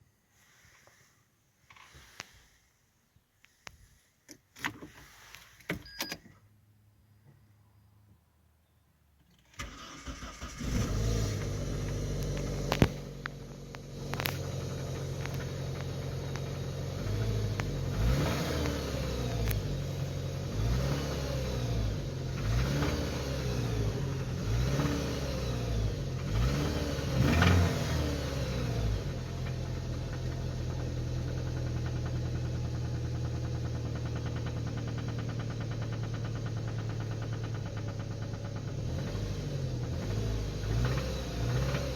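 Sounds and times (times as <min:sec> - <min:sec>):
car engine starting and idling: 0:09.2 - 0:41.9
engine revving: 0:09.6 - 0:41.9.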